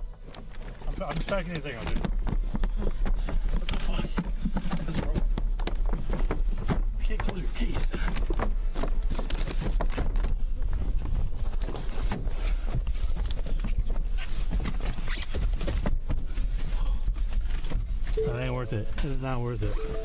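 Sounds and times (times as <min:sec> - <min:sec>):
hurried footsteps: 0:00.0 - 0:14.5
gear and clothing rustling: 0:00.0 - 0:18.1.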